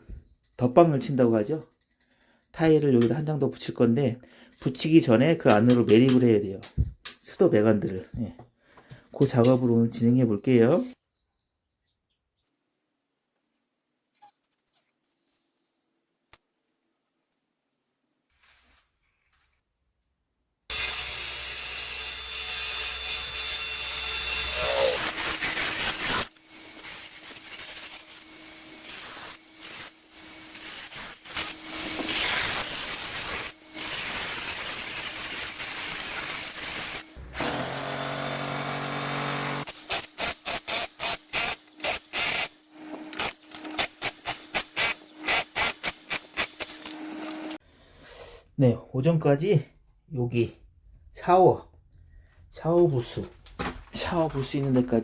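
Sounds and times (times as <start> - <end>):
power tool cutting tile: 20.7 - 47.6
power tool motor running: 20.7 - 47.6.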